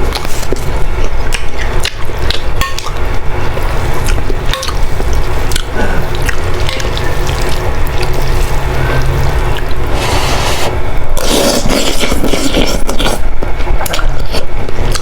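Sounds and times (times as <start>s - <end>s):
slurping and chewing noodles: 5.5s - 15.0s.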